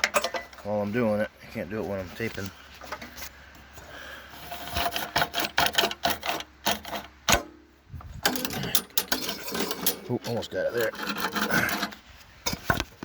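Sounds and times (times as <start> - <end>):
recoil starter clicking and rattling: 4.6 - 7.6, 8.2 - 13.0.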